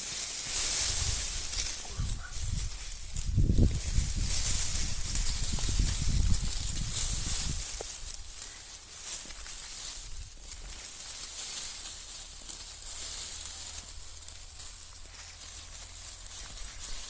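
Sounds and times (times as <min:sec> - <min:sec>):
faint rustling: 0:00.0 - 0:17.0
steady outdoor hiss: 0:00.0 - 0:17.0
wind rumble on microphone: 0:00.8 - 0:08.4.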